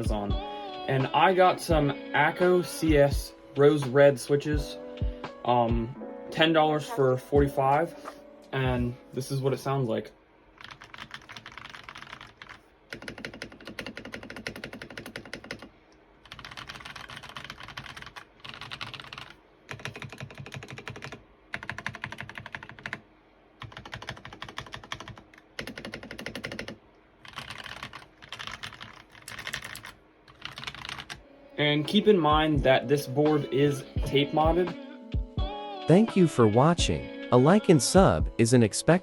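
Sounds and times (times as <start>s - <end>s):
typing on mechanical keyboard: 10.6s - 23.0s, 23.6s - 31.2s.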